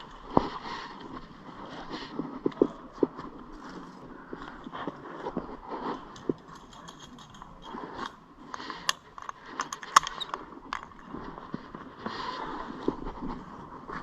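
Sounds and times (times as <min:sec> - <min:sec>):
metal climbing gear clinking: 0:06.0 - 0:11.0.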